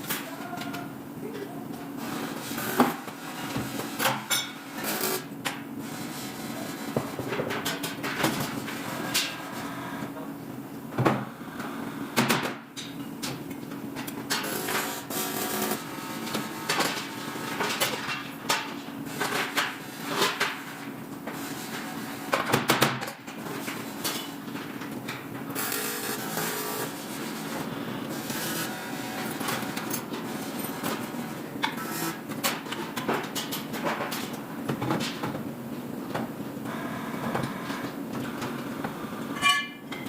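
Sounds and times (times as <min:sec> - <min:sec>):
tools and metal parts clattering: 0:39.4 - 0:40.0.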